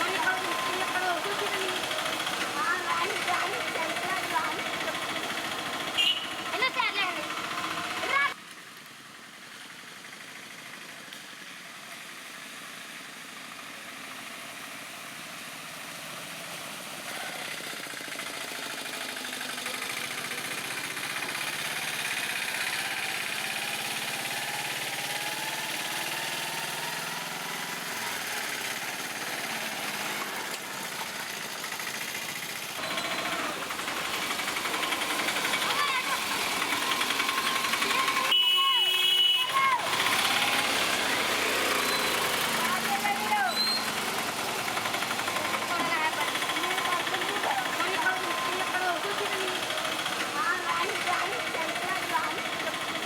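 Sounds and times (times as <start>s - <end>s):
autorickshaw engine running: 0.0s - 53.0s.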